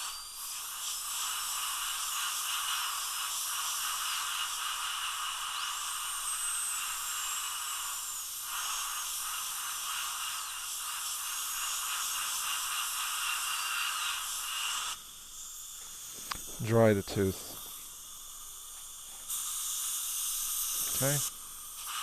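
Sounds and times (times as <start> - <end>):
dental drill whining: 0.0 - 22.0
water spray hiss: 0.0 - 22.0.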